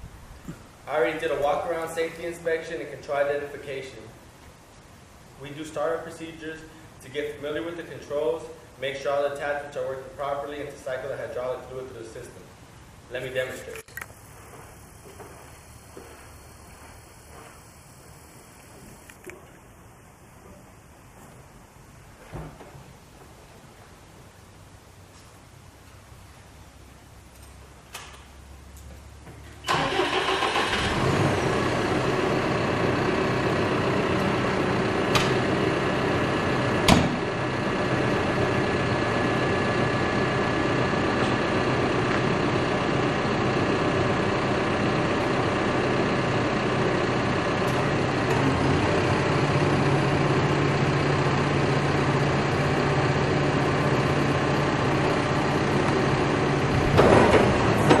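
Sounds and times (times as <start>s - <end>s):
diesel engine starting and idling: 29.6s - 58.0s.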